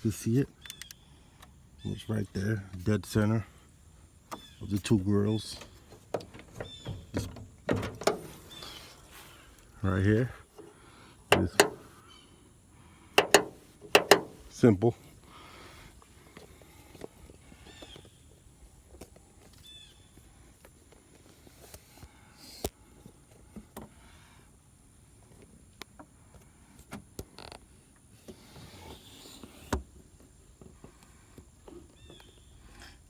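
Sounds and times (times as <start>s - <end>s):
handling clicks and knocks: 4.3s - 8.8s, 11.3s - 12.0s, 13.2s - 14.6s.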